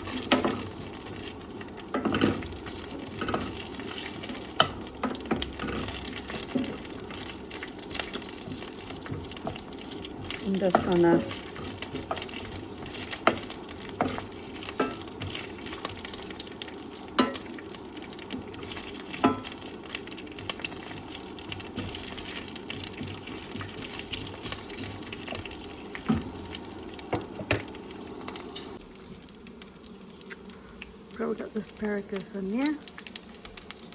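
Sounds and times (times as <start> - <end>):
utensil clacking against pan: 0.0 - 15.9
vegetables sizzling in a pan: 0.0 - 33.9.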